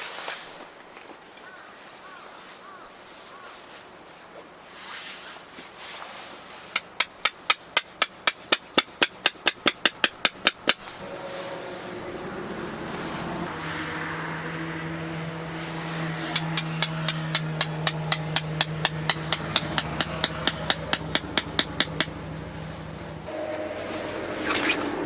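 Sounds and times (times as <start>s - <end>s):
hammer striking tent peg: 6.8s - 10.9s, 16.2s - 22.2s
steady low hum: 10.3s - 25.0s.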